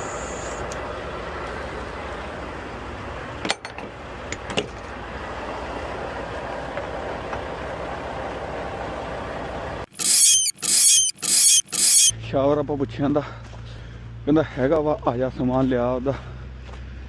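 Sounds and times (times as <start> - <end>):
short sharp clicks: 9.9 - 12.1.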